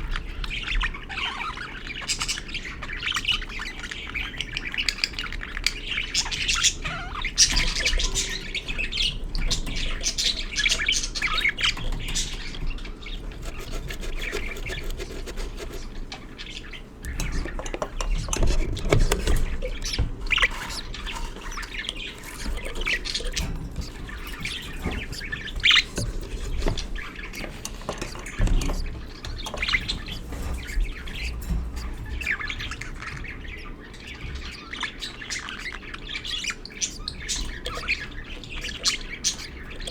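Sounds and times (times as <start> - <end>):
budgerigars chattering: 0.0 - 39.9
clicks and rustles: 11.6 - 33.6.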